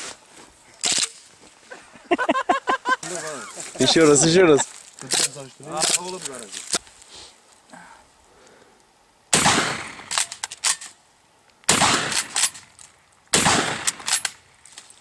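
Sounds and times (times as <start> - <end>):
sharp cracks: 0.8 - 1.3, 5.0 - 6.9, 9.3 - 15.0
gunshots echoing: 9.3 - 10.3, 11.7 - 12.6, 13.3 - 14.3.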